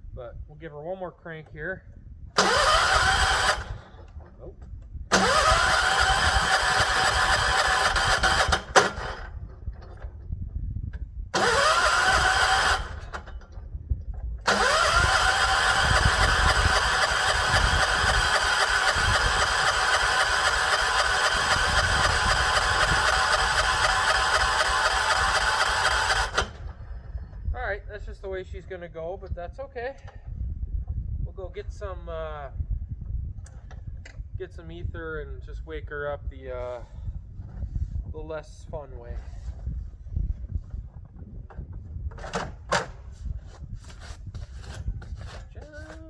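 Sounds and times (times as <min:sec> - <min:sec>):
electric starter cranking engine: 0:02.4 - 0:04.3, 0:05.1 - 0:09.4, 0:11.3 - 0:13.4, 0:14.4 - 0:27.2.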